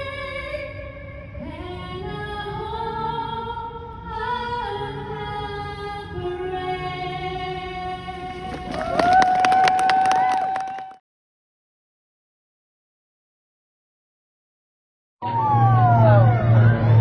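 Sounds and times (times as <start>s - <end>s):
music: 0.0s - 9.6s.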